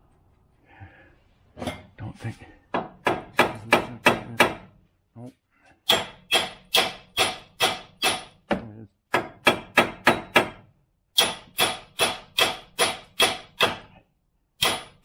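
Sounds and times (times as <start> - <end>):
hammer striking metal: 2.8 - 4.7, 5.8 - 8.5, 9.1 - 13.9, 14.6 - 15.0.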